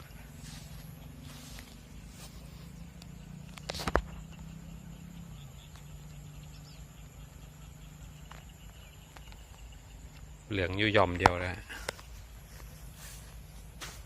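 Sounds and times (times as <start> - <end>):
steady low hum: 0.0 - 14.0
sharp clicks or rustles: 3.5 - 4.2.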